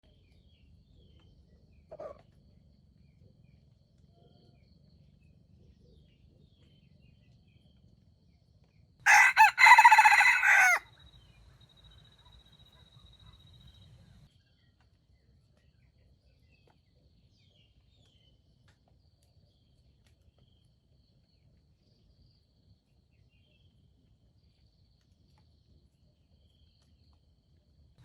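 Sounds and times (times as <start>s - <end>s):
rooster crowing: 9.1s - 10.9s.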